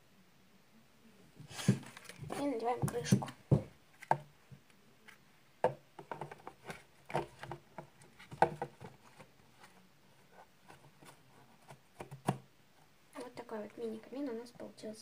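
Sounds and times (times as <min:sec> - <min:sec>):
cardboard box lid taps and knocks: 0:05.6 - 0:09.0.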